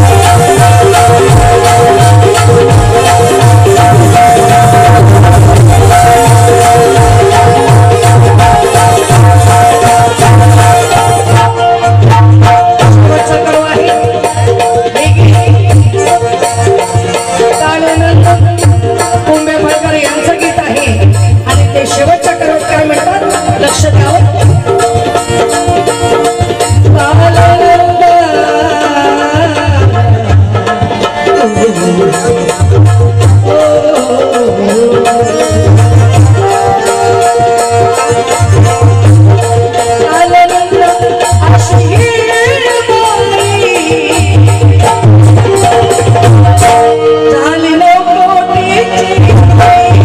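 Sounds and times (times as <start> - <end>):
low drum beat: 0.0 - 13.8
devotional song: 0.0 - 50.0
hand drums beating: 0.0 - 50.0.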